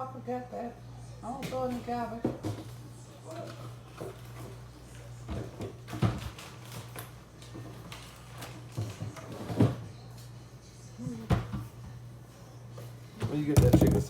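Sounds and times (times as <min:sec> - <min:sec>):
kitchen knocks and thuds: 0:13.5 - 0:14.0.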